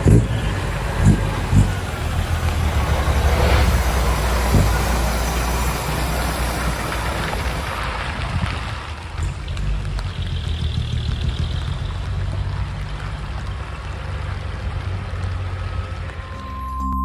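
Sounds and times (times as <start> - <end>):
hiss of water: 0.0 - 11.7
truck diesel engine running: 0.0 - 16.9.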